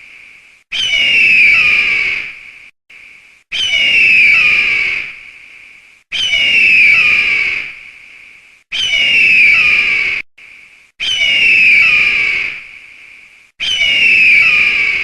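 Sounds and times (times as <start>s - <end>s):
eagle screeching: 0.7s - 2.4s, 3.5s - 5.2s, 6.1s - 7.8s, 8.7s - 10.2s, 11.0s - 12.6s, 13.6s - 15.0s.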